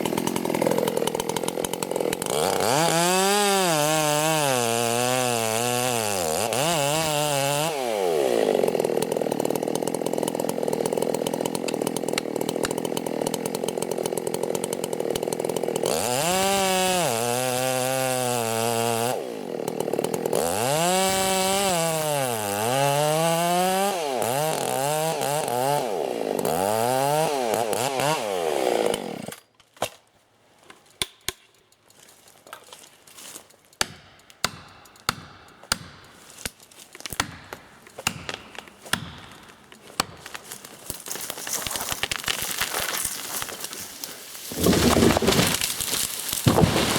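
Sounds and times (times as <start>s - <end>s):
chainsaw cutting timber: 0.0s - 30.0s, 31.0s - 46.9s.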